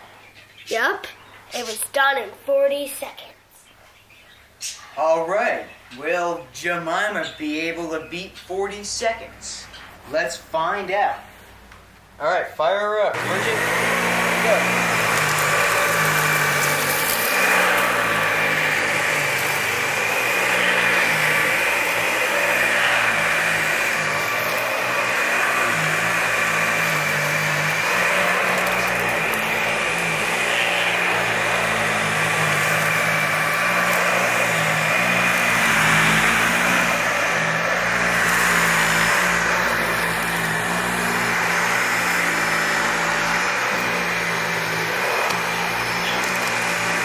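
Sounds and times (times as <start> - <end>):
vacuum cleaner on carpet: 6.0 - 11.1, 12.6 - 47.0.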